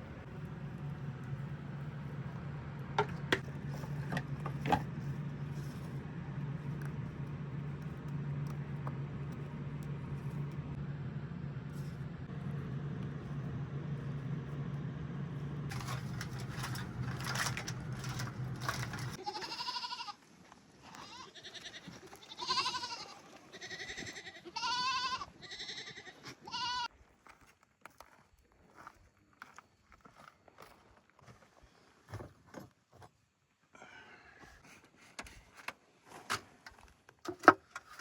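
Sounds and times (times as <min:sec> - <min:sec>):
steady low hum: 0:00.0 - 0:19.2
goats bleating: 0:19.2 - 0:20.2, 0:20.8 - 0:26.9.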